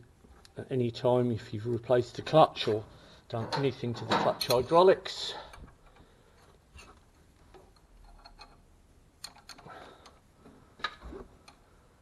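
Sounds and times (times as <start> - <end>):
small parts clicking and tapping: 5.5 - 10.2, 10.8 - 11.6.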